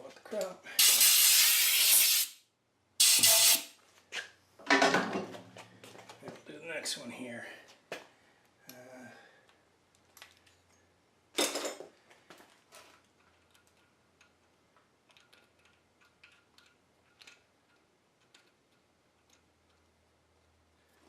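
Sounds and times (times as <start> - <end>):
metal tool clicks and clinks: 15.1 - 19.8.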